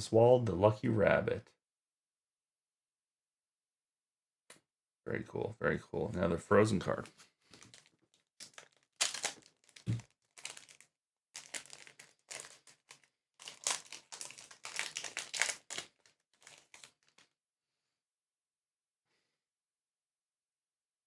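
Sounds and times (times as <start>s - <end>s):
foil wrapper crinkling: 7.5s - 17.3s.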